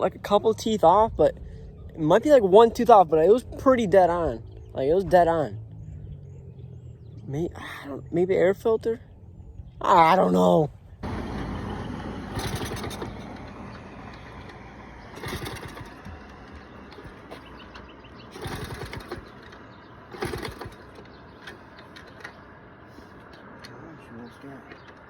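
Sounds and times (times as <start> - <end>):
minibike engine revving: 10.3 - 22.6.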